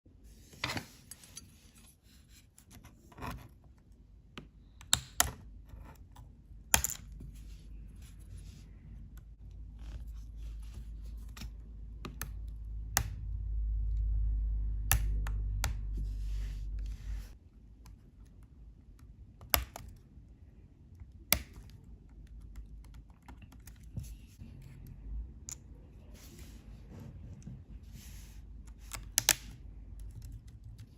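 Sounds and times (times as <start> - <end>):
low rumble: 11.6 - 17.4.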